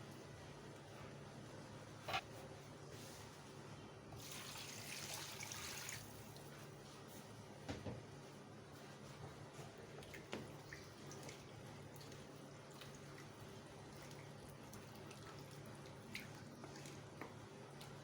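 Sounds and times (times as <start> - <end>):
food simmering in a pot: 8.1 - 18.0.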